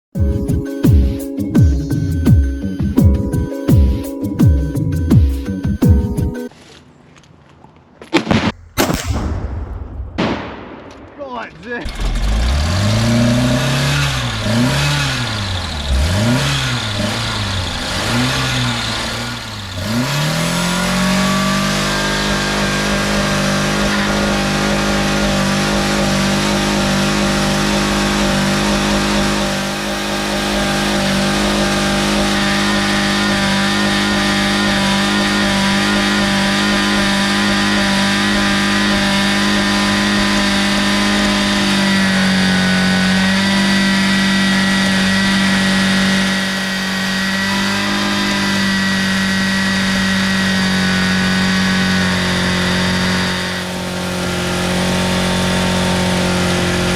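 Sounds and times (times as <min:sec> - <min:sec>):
car engine at high revs: 0:11.8 - 0:56.9
car engine revving: 0:11.8 - 0:56.9.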